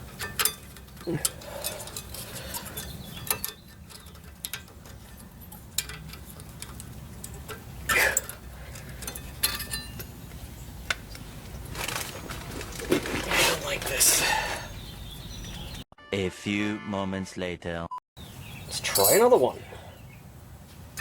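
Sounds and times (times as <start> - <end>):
small metal clicks and clinks: 0.1 - 10.1.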